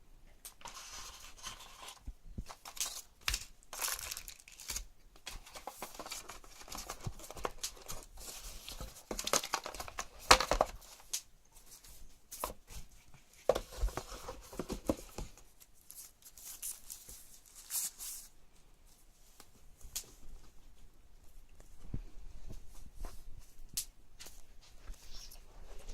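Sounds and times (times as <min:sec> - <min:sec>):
packaging tearing and crinkling: 0:01.4 - 0:08.0.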